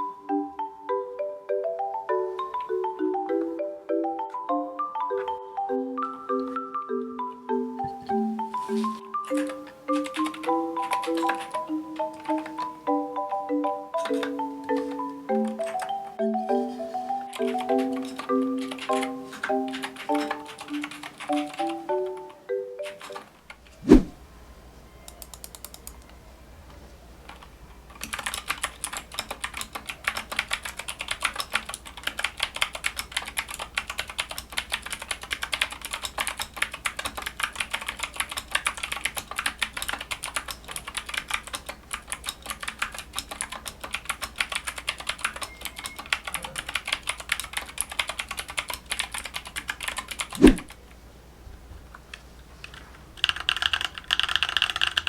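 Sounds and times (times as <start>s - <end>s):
mechanical keyboard typing: 9.2s - 12.7s, 14.0s - 16.1s, 17.2s - 23.3s, 25.1s - 26.0s, 27.3s - 50.8s, 52.6s - 55.0s.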